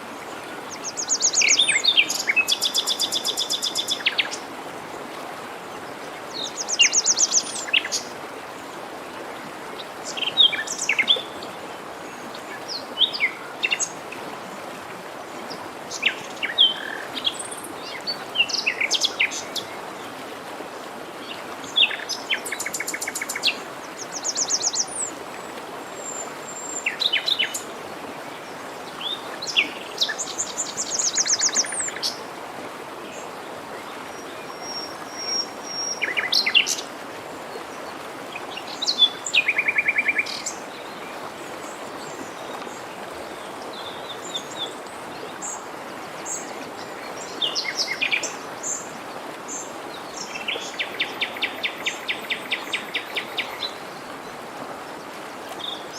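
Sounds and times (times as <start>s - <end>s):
forest stream rushing: 0.0s - 55.9s
songbirds singing: 15.5s - 20.1s, 37.5s - 55.9s.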